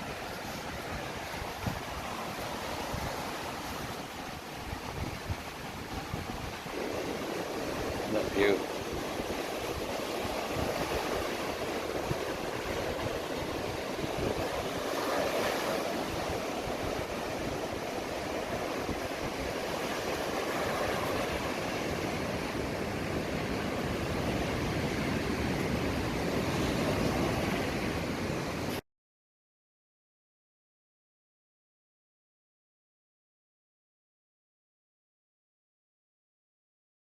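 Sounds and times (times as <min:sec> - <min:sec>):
sea waves washing onto beach: 0:00.0 - 0:28.8.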